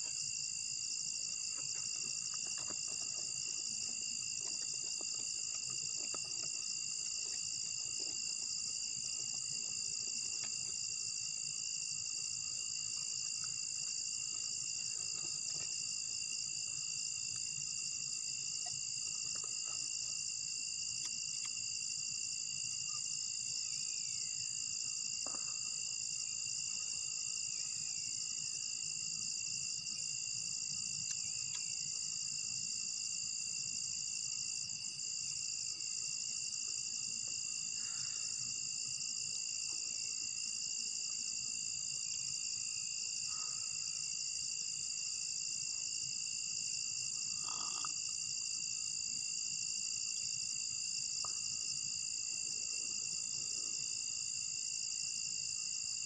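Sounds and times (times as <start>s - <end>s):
crickets and insects trilling: 0.0s - 56.0s
brief croak: 47.4s - 48.0s.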